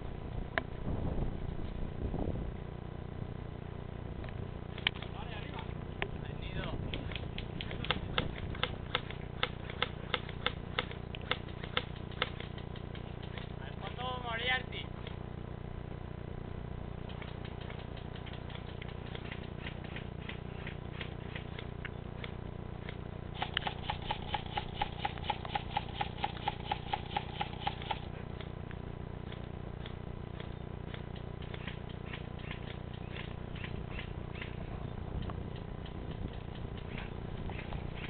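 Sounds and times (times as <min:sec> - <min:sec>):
steady low rumble: 0:00.0 - 0:38.0
airsoft guns firing: 0:23.4 - 0:28.1.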